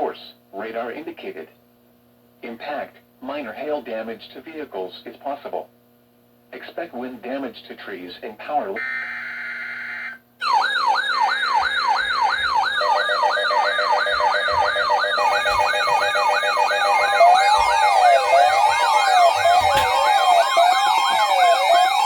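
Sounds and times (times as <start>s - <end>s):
electronic sirens yelping: 8.8s - 22.0s
rising and falling siren tone: 8.8s - 22.0s.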